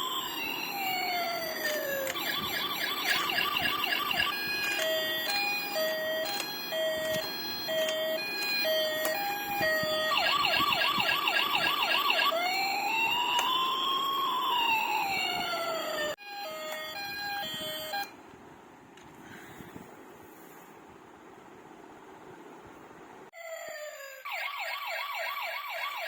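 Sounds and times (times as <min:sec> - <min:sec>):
toy police siren: 0:00.0 - 0:18.1, 0:23.4 - 0:26.0.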